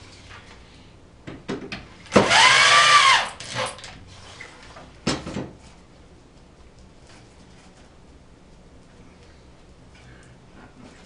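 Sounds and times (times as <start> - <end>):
power drill driving a screw: 2.1 - 3.8.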